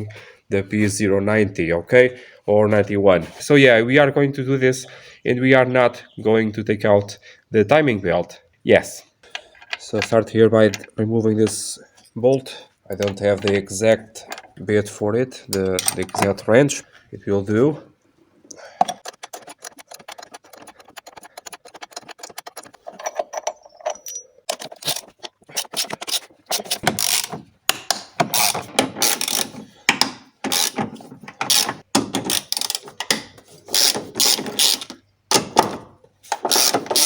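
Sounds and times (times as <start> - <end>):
ratchet wrench clicking: 24.8 - 27.3, 28.3 - 29.5, 30.5 - 30.8, 31.5 - 32.8, 33.8 - 34.9, 36.5 - 37.0.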